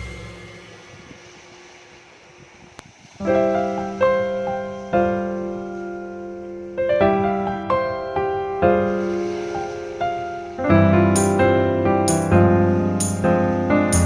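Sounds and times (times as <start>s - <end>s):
soft piano chords: 3.2s - 14.0s.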